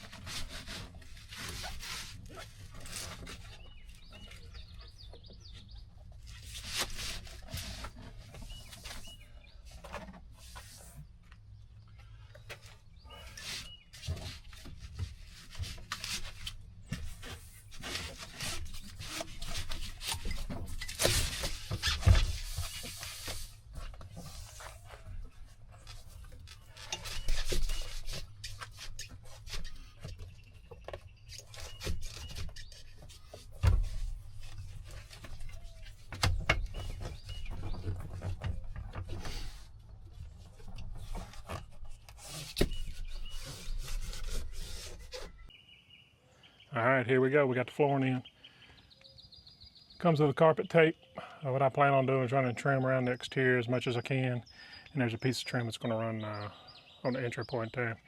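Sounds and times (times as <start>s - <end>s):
rubber mat rubbing and scraping: 0.0s - 11.2s, 12.6s - 45.5s.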